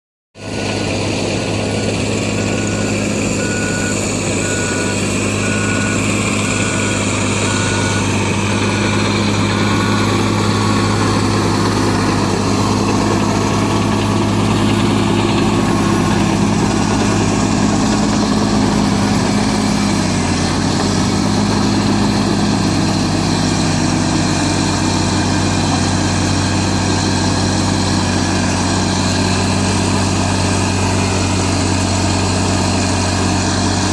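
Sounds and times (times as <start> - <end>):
bulldozer diesel engine running: 0.4 - 33.9
backup alarm beeping: 2.4 - 10.2.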